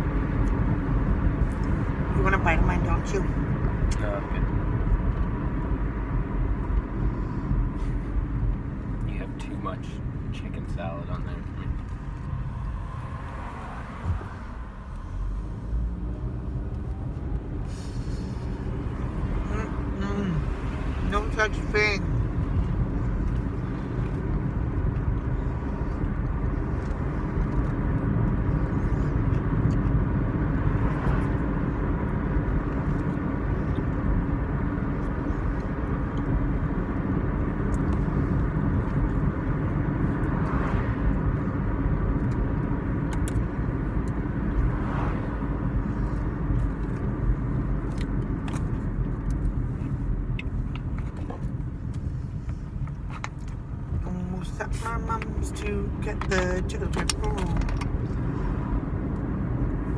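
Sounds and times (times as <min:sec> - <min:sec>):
constant hum: 0:00.0 - 0:59.9
engine and tyre rumble: 0:00.0 - 0:59.9.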